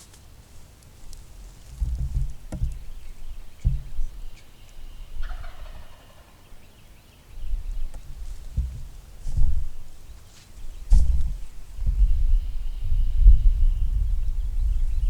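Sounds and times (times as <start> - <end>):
low rumbling thumps: 1.3 - 5.7, 7.4 - 15.0
turkey gobbling: 5.2 - 6.6.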